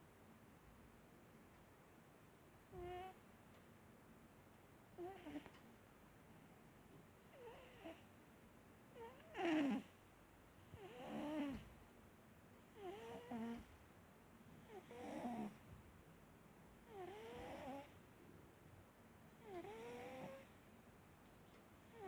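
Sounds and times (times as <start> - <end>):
cat snoring: 7.4 - 8.0, 9.0 - 9.9, 10.8 - 11.6, 12.8 - 13.7, 14.7 - 15.6, 16.9 - 17.9, 19.4 - 20.5.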